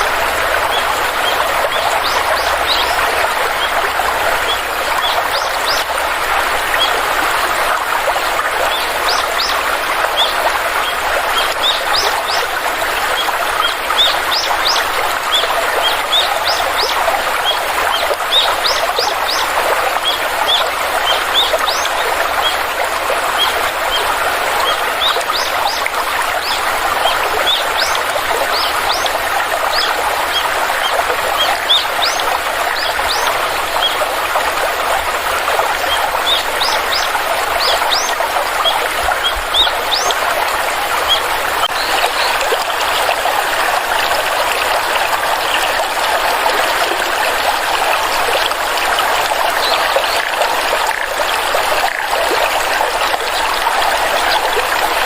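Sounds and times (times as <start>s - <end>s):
stream trickling and splashing: 0.0s - 55.0s
small birds chirping: 0.3s - 3.8s, 8.7s - 22.6s, 23.3s - 34.1s, 35.8s - 40.2s.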